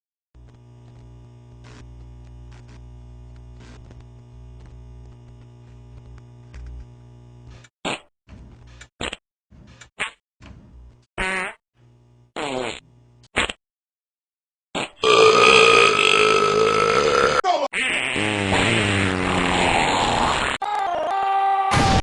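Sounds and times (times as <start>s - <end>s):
electrical hum with fixed tones: 0.4s - 7.7s, 11.8s - 13.3s.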